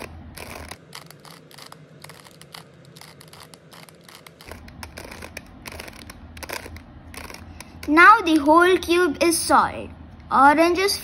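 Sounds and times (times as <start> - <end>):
puzzle cube layers clicking: 0.0 - 8.5.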